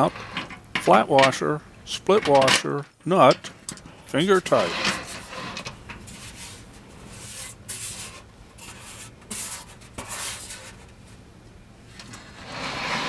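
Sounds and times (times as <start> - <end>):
nuts threaded onto studs: 0.0 - 7.4
hands scraping metal panels: 0.0 - 11.3, 11.9 - 13.0.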